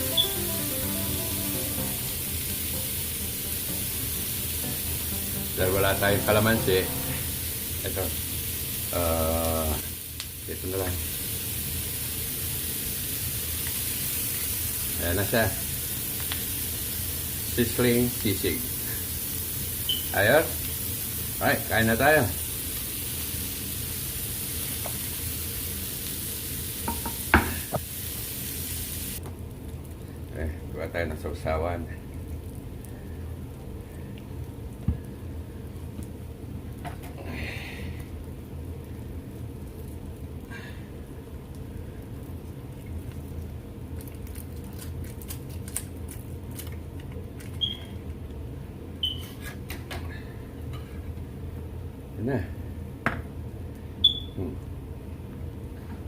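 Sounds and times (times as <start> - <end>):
meat sizzling on a hot plate: 0.0 - 37.1, 47.4 - 48.0.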